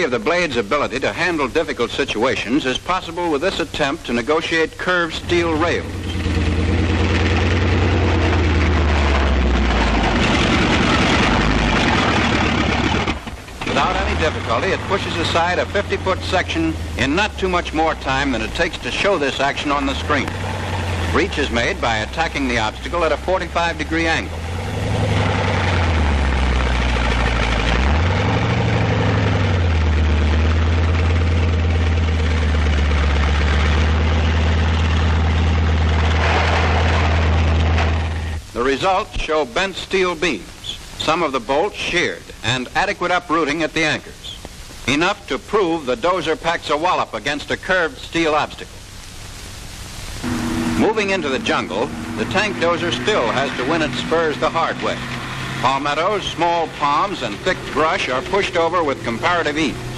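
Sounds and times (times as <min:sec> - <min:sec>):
dense mechanical noise: 0:00.0 - 0:59.9
noisy clatter: 0:04.8 - 0:38.5
tank engine running: 0:05.1 - 0:38.4, 0:50.2 - 0:59.9.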